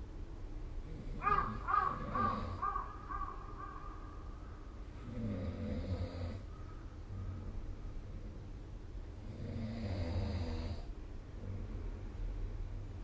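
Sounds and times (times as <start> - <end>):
short pitched calls: 1.2 - 4.3.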